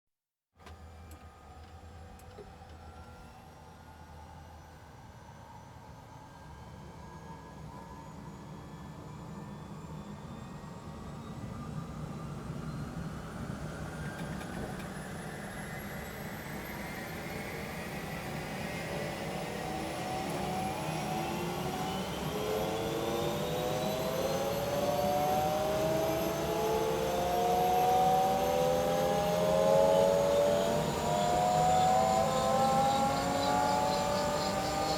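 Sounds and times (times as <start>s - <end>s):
helicopter turbines spooling up: 13.2s - 34.9s.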